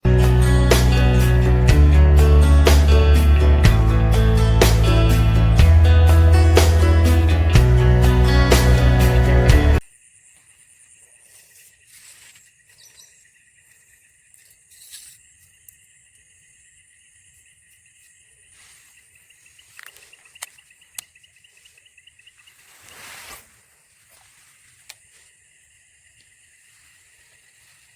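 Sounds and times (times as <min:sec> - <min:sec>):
intro music: 0:00.0 - 0:09.8
insects trilling: 0:09.8 - 0:27.9.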